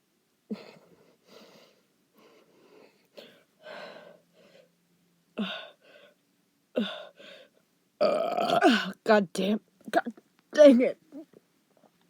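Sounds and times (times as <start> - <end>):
woman breathing and gasping: 0.5 - 4.8, 5.4 - 6.2, 6.8 - 7.6
throat burp sounds: 8.0 - 8.9.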